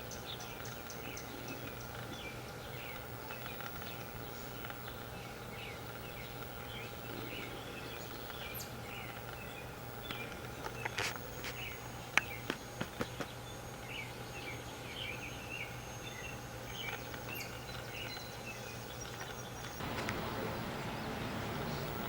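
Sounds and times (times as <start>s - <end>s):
small bird chirping: 0.0s - 20.0s
steady low hum: 0.0s - 22.0s
broad rushing noise: 19.8s - 22.0s.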